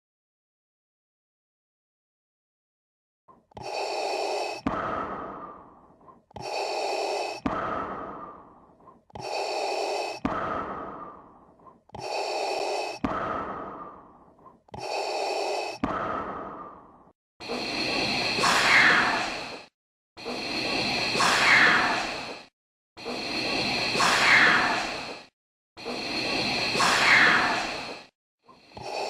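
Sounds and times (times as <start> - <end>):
mechanical respirator breathing: 3.4 - 16.7, 17.4 - 29.0.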